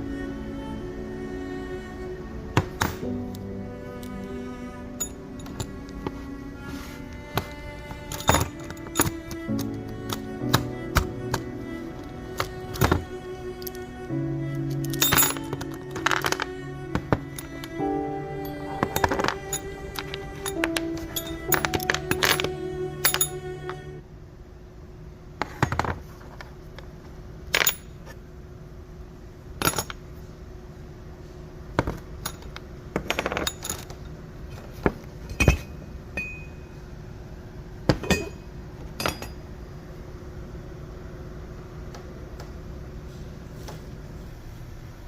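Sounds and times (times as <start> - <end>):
steady low hum: 0.0 - 45.0
metal tools clinking: 8.1 - 9.7, 14.8 - 16.2, 18.4 - 23.4, 32.2 - 34.0, 38.0 - 38.4, 39.0 - 39.4.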